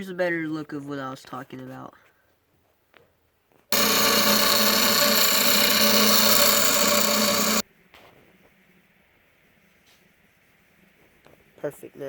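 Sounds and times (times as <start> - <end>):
rotary tool grinding metal: 3.7 - 7.6.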